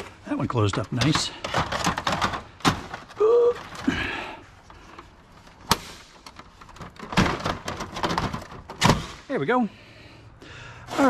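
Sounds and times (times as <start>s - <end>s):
computer parts clicking and knocking: 0.0s - 3.9s, 5.6s - 9.2s
person saying ooh: 3.2s - 3.6s.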